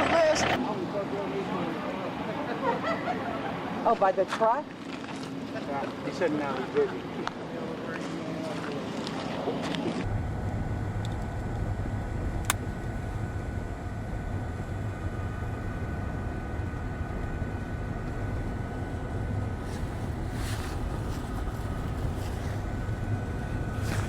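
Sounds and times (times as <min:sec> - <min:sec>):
engine low rumble: 0:00.0 - 0:00.6, 0:06.9 - 0:24.0.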